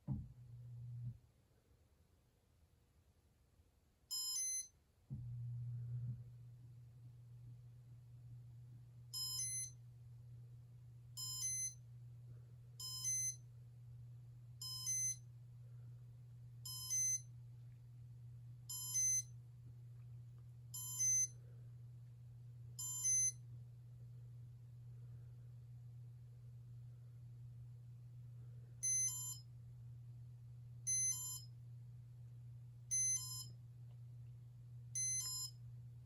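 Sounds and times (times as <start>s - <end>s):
steady low hum: 0.0s - 1.2s, 5.1s - 36.0s.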